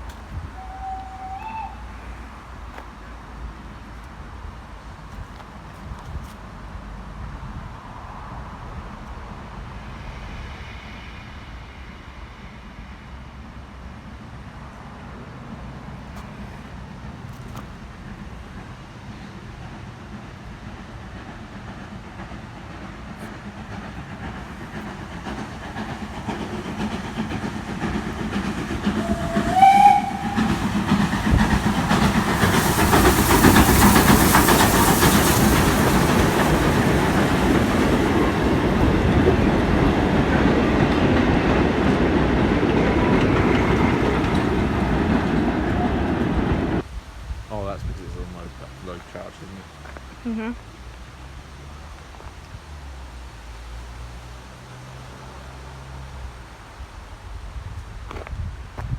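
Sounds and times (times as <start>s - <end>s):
train rumble: 0.0s - 58.9s
train whistle blast: 0.5s - 2.4s, 28.9s - 30.8s
wheels clattering over rail joints: 16.0s - 46.9s.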